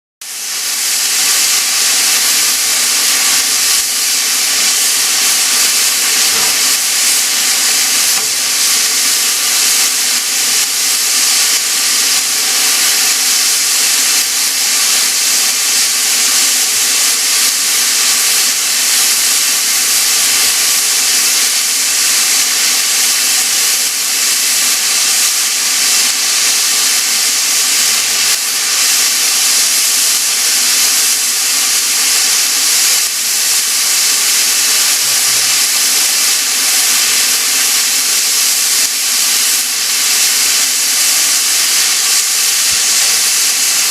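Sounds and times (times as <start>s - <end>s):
steam venting hiss: 0.2s - 43.9s.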